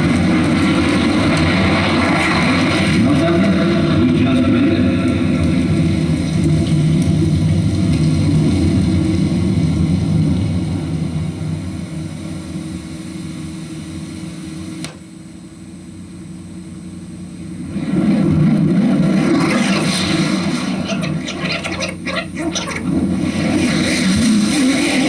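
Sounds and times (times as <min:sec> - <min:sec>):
jet aircraft rumble: 0:00.0 - 0:25.0
sharp click: 0:14.8 - 0:15.1.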